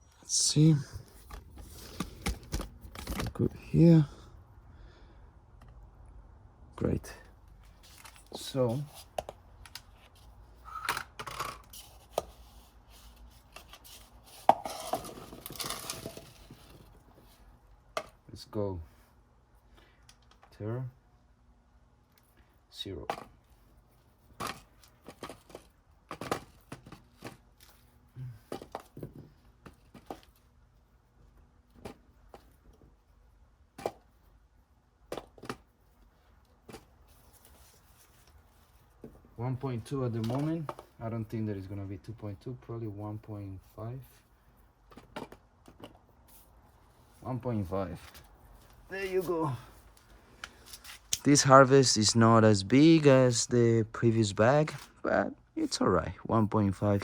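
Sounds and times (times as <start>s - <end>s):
rustling: 35.4s - 41.3s.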